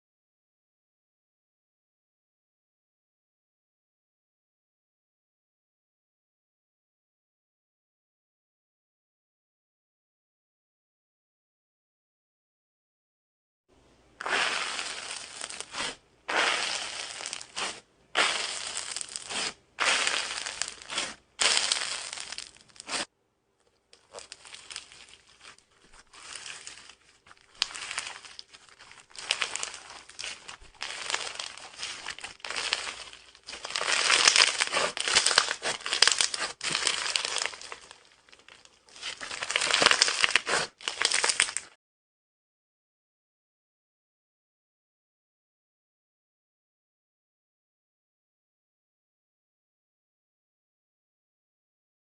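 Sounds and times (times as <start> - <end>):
slime squished by hand crackling: 14.2 - 23.1, 24.0 - 41.7.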